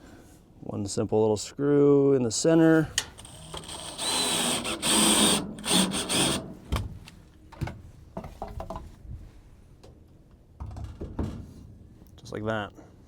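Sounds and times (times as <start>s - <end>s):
power drill driving screw into wood: 3.1s - 6.8s.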